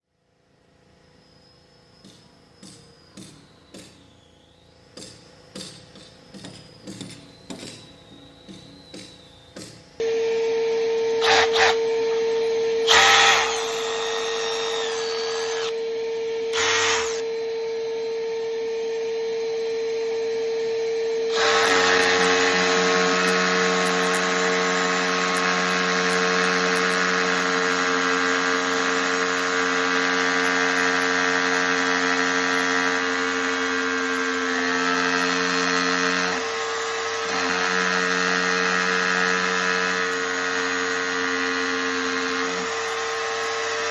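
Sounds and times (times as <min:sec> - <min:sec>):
rotary hammer motor whine: 0:00.4 - 0:43.9
hammer drilling into concrete: 0:11.2 - 0:11.8, 0:12.9 - 0:15.7, 0:16.6 - 0:17.2, 0:21.3 - 0:43.9.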